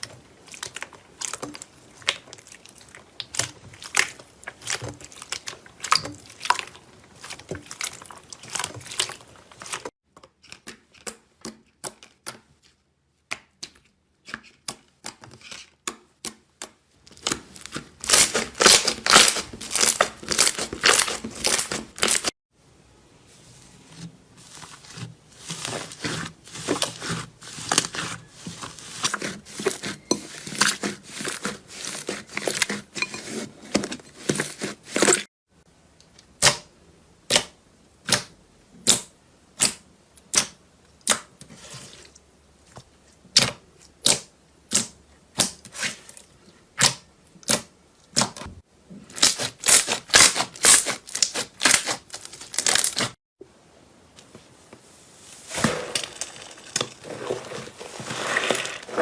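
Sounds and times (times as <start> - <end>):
slime crackling and popping: 17.1 - 22.3.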